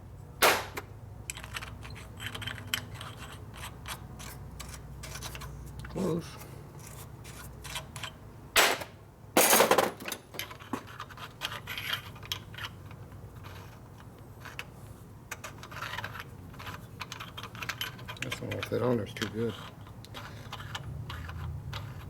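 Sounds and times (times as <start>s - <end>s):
small metal parts clinking: 1.2s - 5.5s, 15.3s - 22.0s
scraping rattle: 15.3s - 22.0s.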